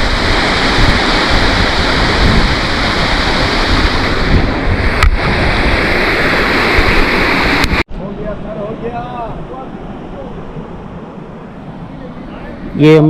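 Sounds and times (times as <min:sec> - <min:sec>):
waterfall rushing: 0:00.0 - 0:07.8.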